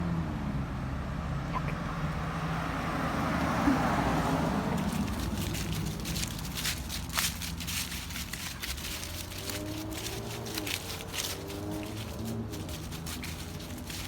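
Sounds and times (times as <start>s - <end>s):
footsteps crunching dry leaves: 3.8s - 14.0s.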